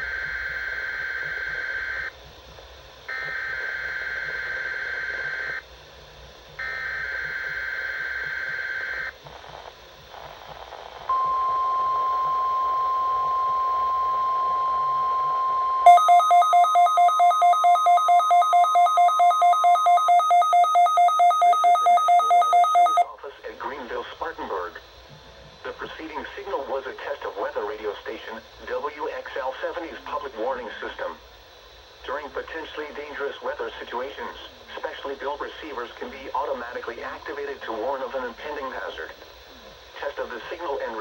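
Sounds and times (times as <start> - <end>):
pulsing electronic alarm beeps: 11.1 - 23.1
steady warning alarm tone: 11.1 - 23.1.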